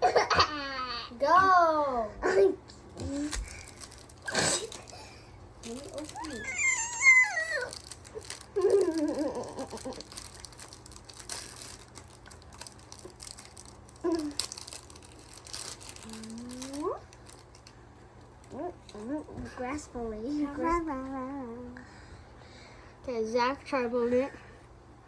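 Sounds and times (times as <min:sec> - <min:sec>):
foil wrapper crinkling: 0:03.0 - 0:17.8.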